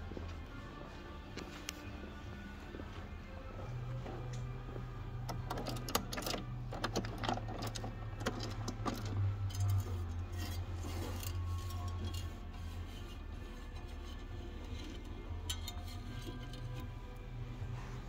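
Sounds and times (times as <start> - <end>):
steady low hum: 0.0 - 18.0
vending machine metallic clicks: 5.3 - 9.9.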